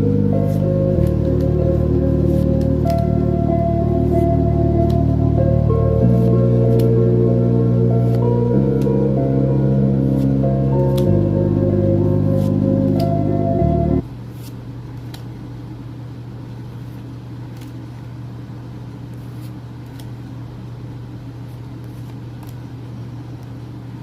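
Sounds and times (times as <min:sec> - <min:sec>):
background music: 0:00.0 - 0:14.0
low room hum: 0:00.0 - 0:24.0.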